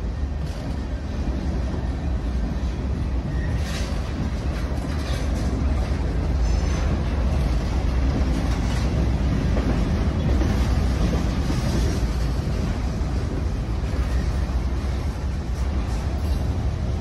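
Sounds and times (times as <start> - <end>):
freight train rumbling: 0.0 - 17.0
wind buffeting microphone: 0.0 - 17.0.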